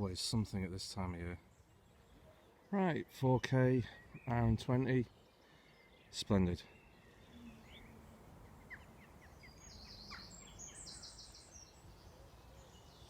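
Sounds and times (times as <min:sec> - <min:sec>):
bird chirping and trilling: 0:03.8 - 0:13.0.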